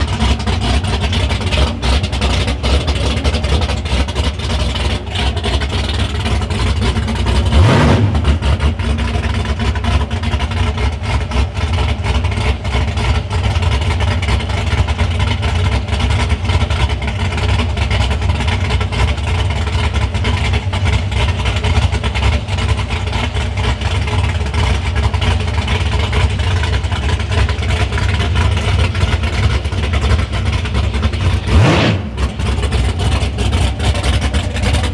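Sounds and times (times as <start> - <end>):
car engine lumpy idle: 0.0 - 34.9
engine rev blip: 7.6 - 8.6, 31.0 - 33.3.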